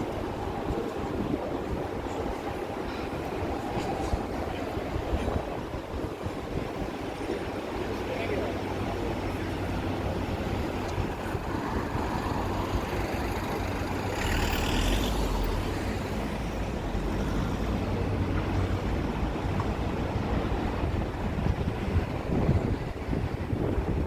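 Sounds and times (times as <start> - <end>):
heavy vehicle engine running: 8.5 - 23.6.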